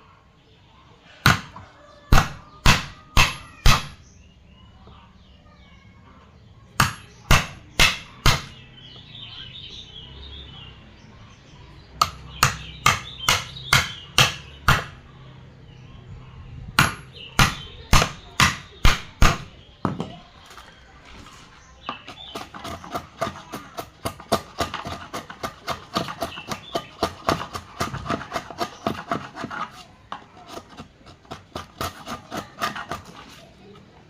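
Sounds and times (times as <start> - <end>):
hammer striking wood: 1.2 - 4.0, 6.8 - 8.6, 12.0 - 15.0, 16.8 - 20.2, 21.9 - 29.6.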